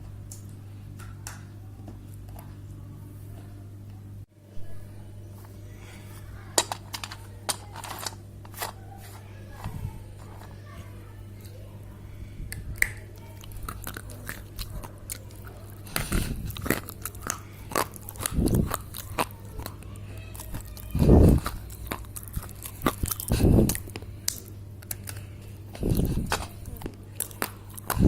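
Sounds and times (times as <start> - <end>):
steady low hum: 0.0 - 28.0
dry clay crunching and crackling: 12.8 - 28.0.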